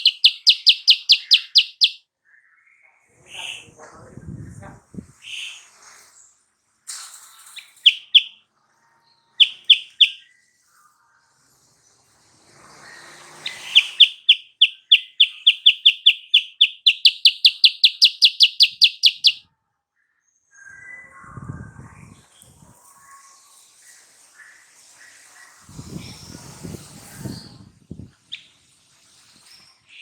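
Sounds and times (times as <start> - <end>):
bird singing whistled notes: 0.0 - 2.0, 7.6 - 8.4, 9.4 - 10.3, 13.4 - 19.4.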